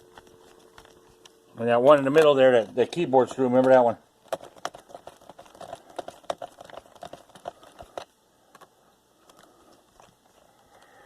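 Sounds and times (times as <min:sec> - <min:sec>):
faint handling sounds: 0:00.0 - 0:11.0
screwdriver clicking on plastic case: 0:03.6 - 0:08.7.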